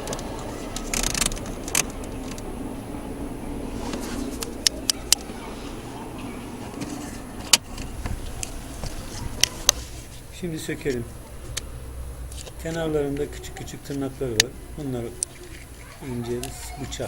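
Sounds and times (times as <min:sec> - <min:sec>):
car interior hum: 0:00.0 - 0:17.0
rustle: 0:03.6 - 0:17.0.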